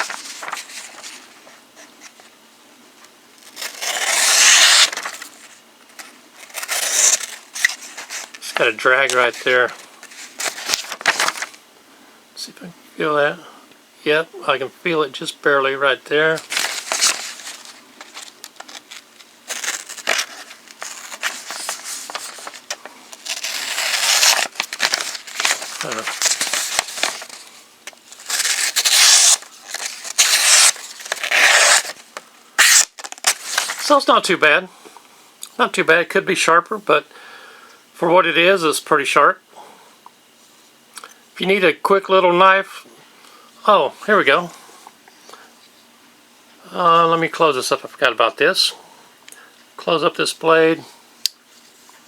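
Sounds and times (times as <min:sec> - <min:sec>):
knife cutting paper: 0:03.5 - 0:05.4, 0:06.0 - 0:08.4, 0:16.4 - 0:27.5, 0:28.1 - 0:32.0, 0:32.6 - 0:33.9.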